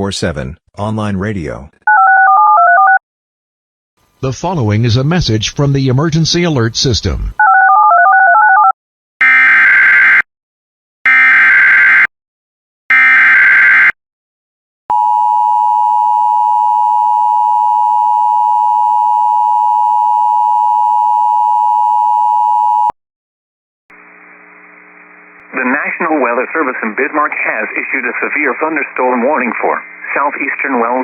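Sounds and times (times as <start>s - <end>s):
steady two-tone alarm: 12.9s - 14.0s.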